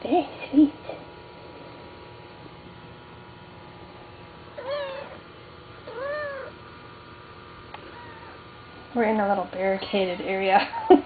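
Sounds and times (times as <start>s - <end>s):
cat meowing: 4.6s - 5.2s, 5.9s - 6.6s, 7.9s - 8.4s.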